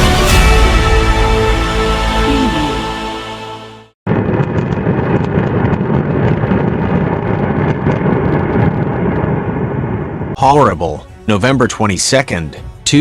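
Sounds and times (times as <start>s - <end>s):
music: 0.0s - 4.0s, 10.4s - 13.0s
crackles: 4.1s - 10.4s
volcano rumbling: 4.1s - 10.4s.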